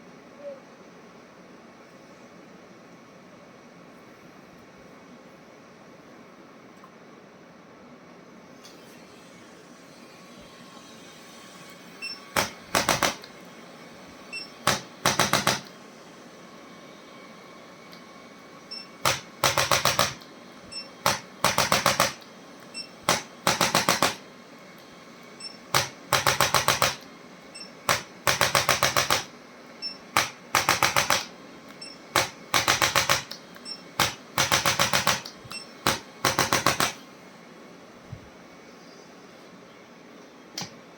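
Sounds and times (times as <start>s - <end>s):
adjusting instrument rapid clicking: 30.2s - 31.3s, 32.2s - 33.4s.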